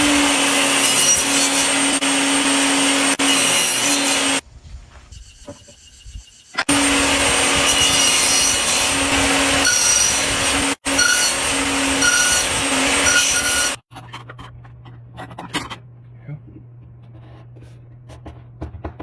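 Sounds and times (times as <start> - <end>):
saw rasping through wood: 0.0 - 4.4, 6.7 - 13.8.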